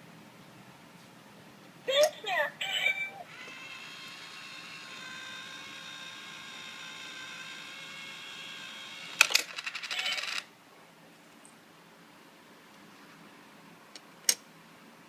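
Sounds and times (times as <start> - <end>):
small motor whining: 3.2 - 9.3
coin clattering: 9.2 - 10.4.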